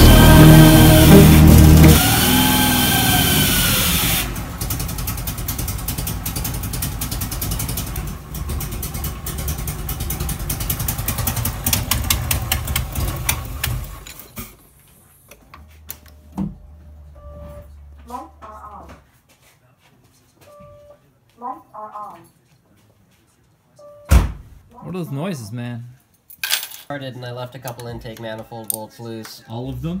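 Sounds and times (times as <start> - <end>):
music: 0.0 - 2.0
engine running roughly with ticking: 0.0 - 14.0.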